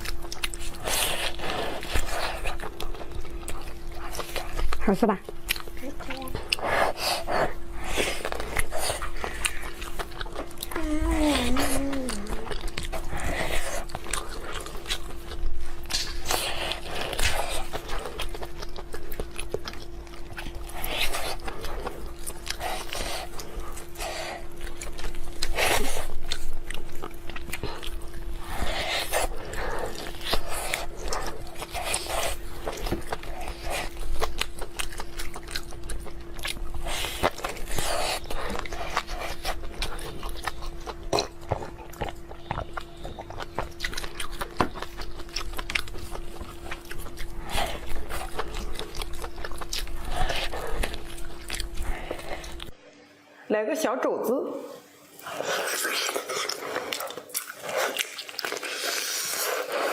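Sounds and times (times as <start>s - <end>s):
chewing and crunching food: 0.0s - 52.8s, 55.0s - 59.9s
steady low hum: 0.0s - 59.9s.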